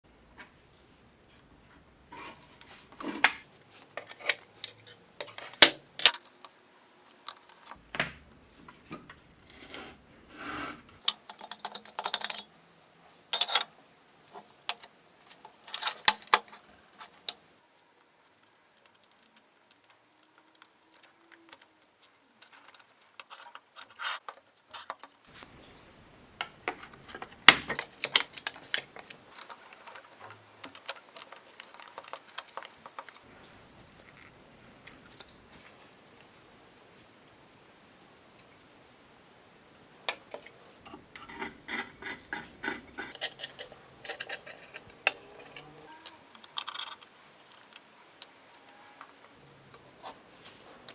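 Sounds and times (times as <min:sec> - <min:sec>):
small hard objects clicking: 0:17.0 - 0:25.3, 0:27.7 - 0:33.3.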